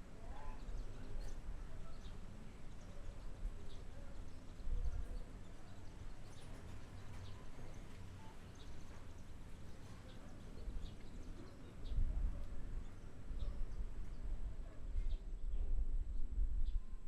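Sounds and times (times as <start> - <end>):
low wind rumble: 10.6 - 17.0.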